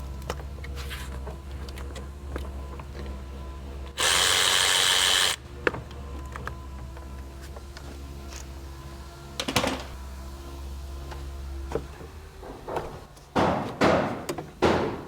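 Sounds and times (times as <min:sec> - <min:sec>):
cordless power tool running: 0:03.9 - 0:05.5.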